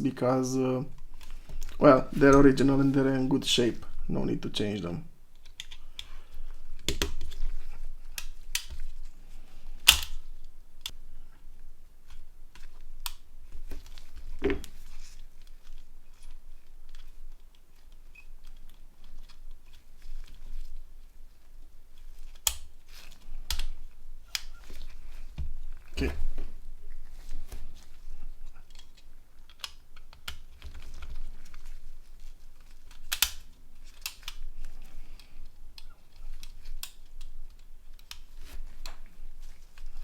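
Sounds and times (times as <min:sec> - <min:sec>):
plastic parts clicking: 0:05.3 - 0:06.1, 0:06.8 - 0:07.5, 0:08.1 - 0:08.9, 0:09.8 - 0:11.0, 0:21.6 - 0:25.0, 0:28.6 - 0:40.0.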